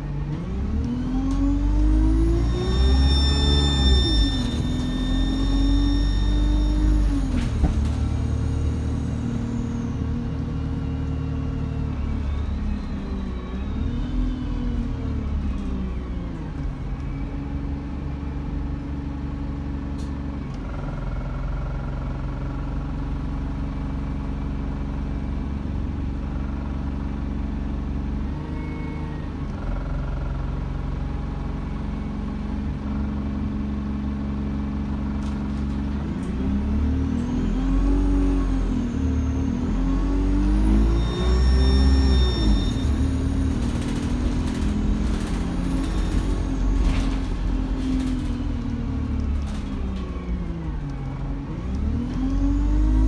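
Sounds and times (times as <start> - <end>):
diesel bus engine: 0.0 - 53.0
turbocharger whistle: 2.0 - 7.3, 39.2 - 45.4.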